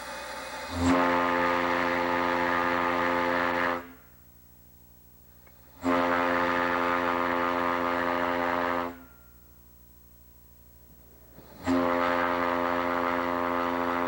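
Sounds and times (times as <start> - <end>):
deep steam whistle blasts: 0.0 - 4.2, 5.7 - 9.4, 11.2 - 14.0.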